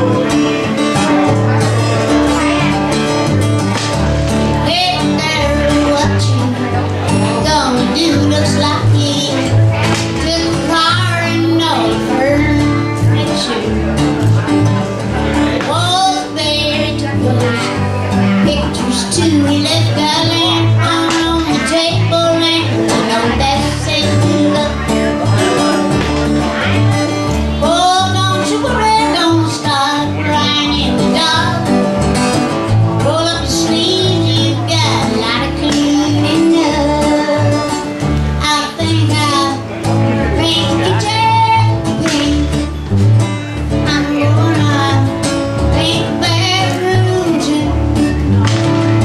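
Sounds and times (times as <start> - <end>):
acoustic guitar strumming: 0.0 - 49.0
woman singing: 4.6 - 13.8, 15.6 - 25.1, 27.6 - 31.8, 33.0 - 42.8, 43.8 - 48.3.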